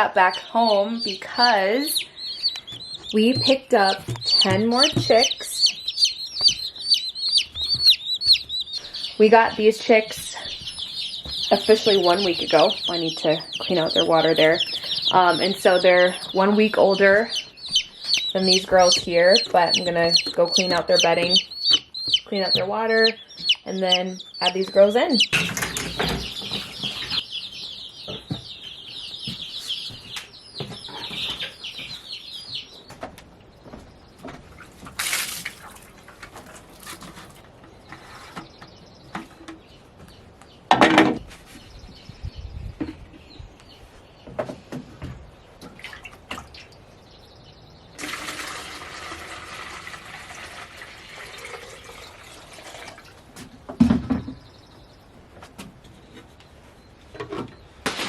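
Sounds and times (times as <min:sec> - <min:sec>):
baby chicks peeping: 0:00.0 - 0:58.0
handling clatter with thumps: 0:02.7 - 0:05.4
water running: 0:48.0 - 0:53.1.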